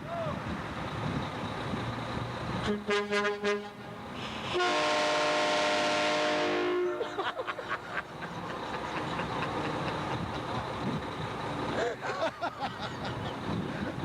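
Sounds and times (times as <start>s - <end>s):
train horn: 2.6s - 7.2s.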